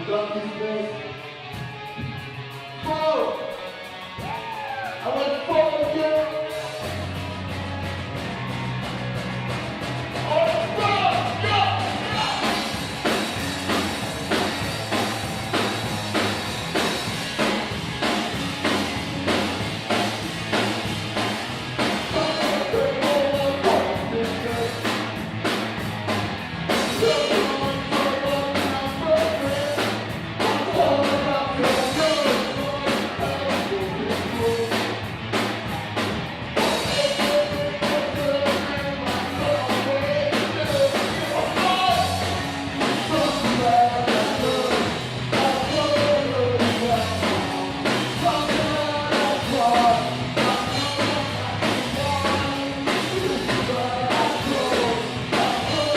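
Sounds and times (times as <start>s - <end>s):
rock band playing: 0.0s - 55.9s
person singing: 10.2s - 12.6s, 22.0s - 25.0s, 27.0s - 34.9s, 36.6s - 55.9s.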